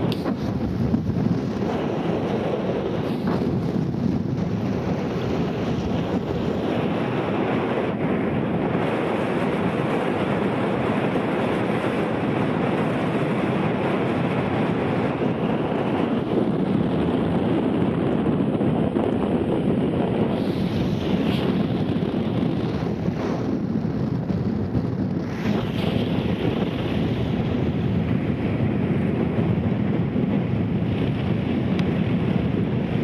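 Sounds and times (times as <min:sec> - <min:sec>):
wind rushing across microphone: 0:00.0 - 0:33.0.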